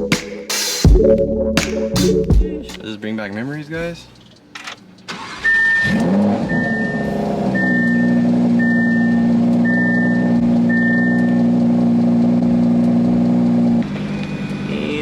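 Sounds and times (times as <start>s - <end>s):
car engine starting and idling: 2.2s - 15.0s
high warning chime beeps: 5.4s - 11.4s.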